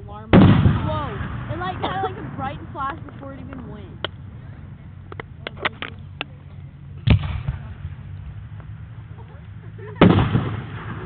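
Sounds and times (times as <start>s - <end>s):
rolling echo: 0.0s - 11.0s
steady low hum: 0.0s - 11.0s
loud firework bursts: 0.3s - 3.3s, 7.0s - 11.0s.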